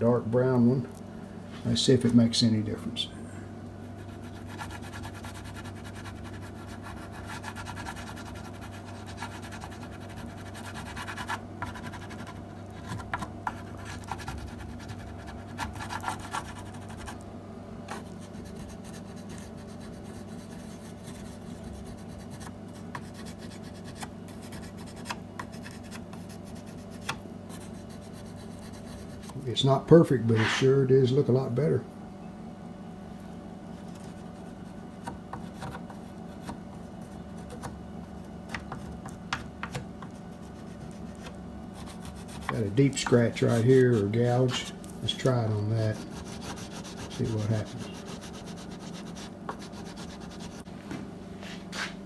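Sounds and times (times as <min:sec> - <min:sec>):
steady low hum: 0:00.0 - 0:52.0
wax crayon rubbing scratchily: 0:03.8 - 0:17.2, 0:17.9 - 0:29.4, 0:30.4 - 0:30.7, 0:40.1 - 0:50.7.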